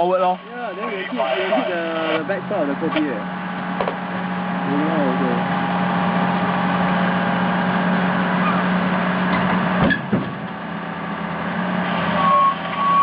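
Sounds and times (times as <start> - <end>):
backhoe diesel engine running: 0.0 - 13.0
clunk: 3.8 - 4.0, 9.3 - 10.6.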